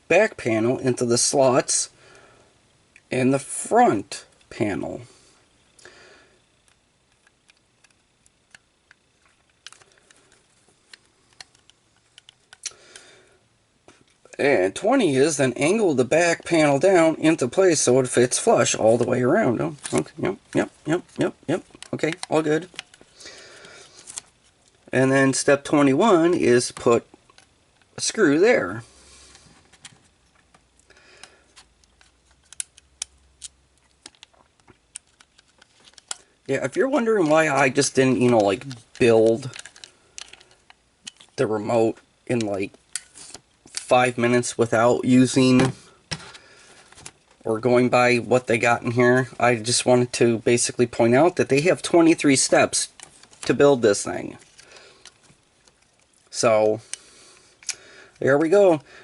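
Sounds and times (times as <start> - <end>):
plastic parts clicking: 6.6 - 12.7, 21.7 - 24.9, 31.2 - 36.3, 37.2 - 41.4.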